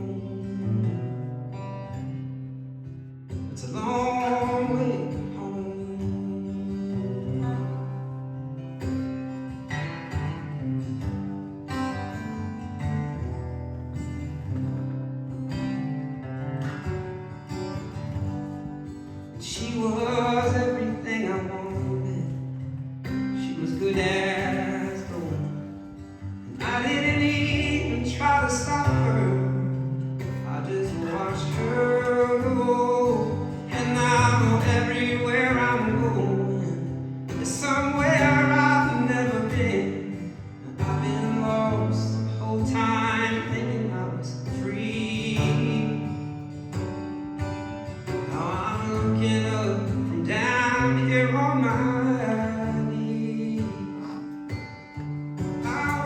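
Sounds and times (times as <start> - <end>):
man singing: 0.0 - 1.2, 3.5 - 8.2, 19.2 - 46.5, 48.1 - 54.7, 55.5 - 56.0
guitar accompaniment: 0.0 - 56.0.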